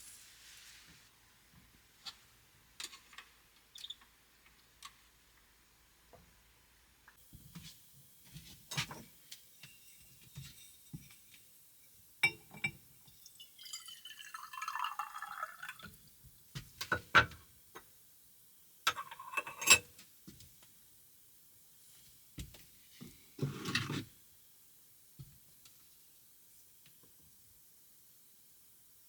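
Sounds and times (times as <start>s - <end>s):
glassware and dishes clinking: 12.2s - 15.9s, 18.9s - 20.0s
liquid pouring: 13.2s - 16.0s.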